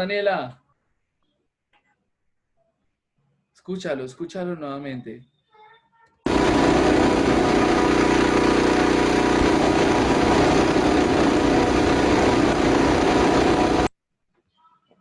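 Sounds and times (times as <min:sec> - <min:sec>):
loud steady balloon noise: 0:06.3 - 0:13.9.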